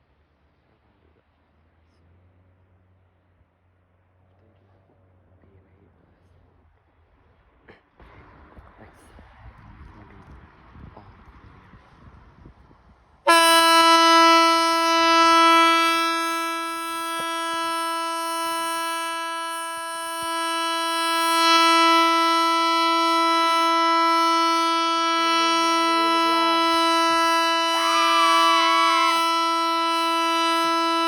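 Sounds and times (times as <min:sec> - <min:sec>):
warning siren steady tone: 0:13.3 - 0:31.0.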